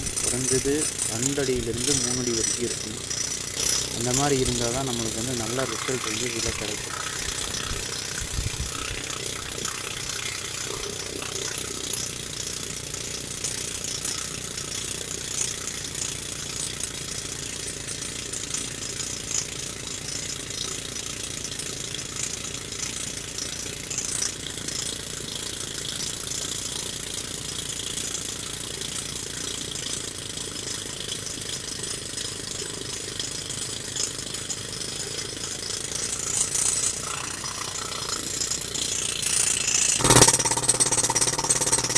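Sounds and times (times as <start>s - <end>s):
rock drill hammering: 0.0s - 14.6s, 33.2s - 41.9s.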